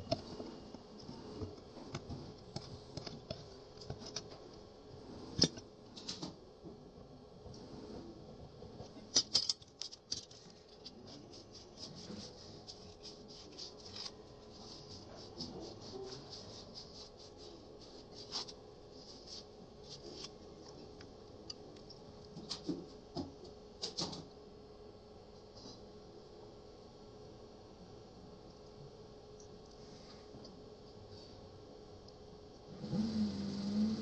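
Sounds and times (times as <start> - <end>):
small machine parts clicking: 9.1 - 10.9.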